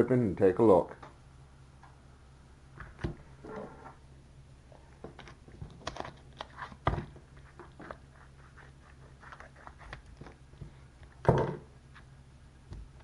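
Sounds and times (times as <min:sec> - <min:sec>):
plastic packaging crinkling: 0:04.8 - 0:10.6.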